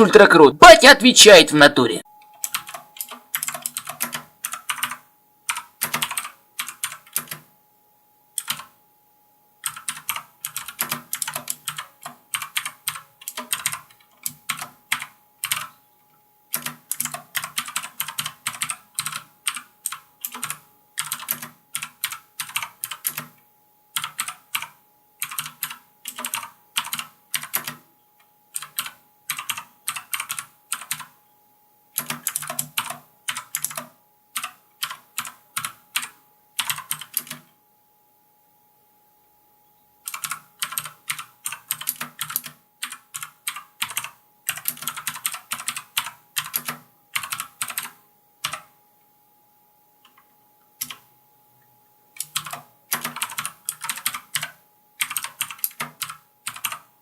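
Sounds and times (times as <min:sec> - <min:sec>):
mechanical keyboard typing clicks: 0:02.4 - 0:07.5, 0:08.4 - 0:08.8, 0:09.6 - 0:15.7, 0:16.5 - 0:23.4, 0:24.0 - 0:27.9, 0:28.5 - 0:31.2, 0:32.0 - 0:37.5, 0:40.0 - 0:48.7, 0:50.0 - 0:51.1, 0:52.2 - 0:56.9.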